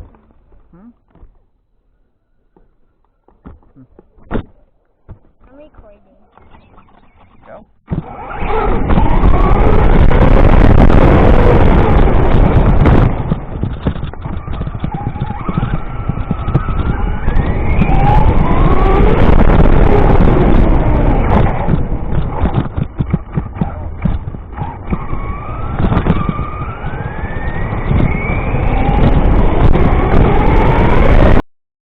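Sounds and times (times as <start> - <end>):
driving rumble: 0.0 - 31.4
rc car motor whining: 6.4 - 12.5.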